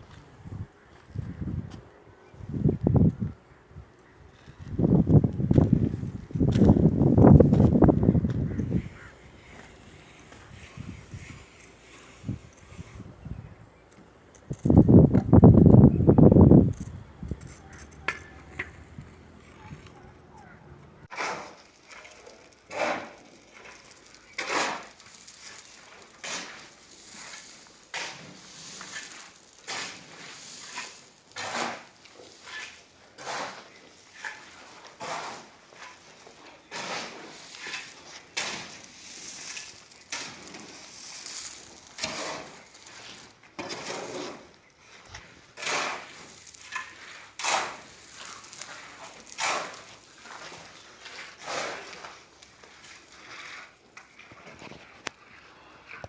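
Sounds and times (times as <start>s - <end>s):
tool scraping and knocking: 42.0s - 52.2s.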